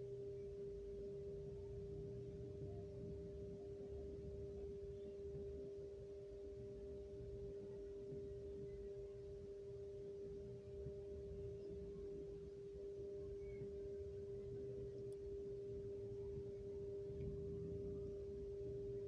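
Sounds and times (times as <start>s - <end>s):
faint steady hum: 0.0s - 19.0s
low rumble: 10.2s - 19.0s.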